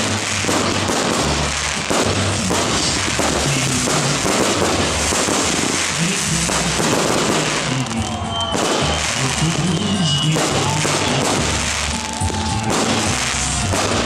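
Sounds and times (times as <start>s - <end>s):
fireworks bursting and banging: 0.0s - 14.0s.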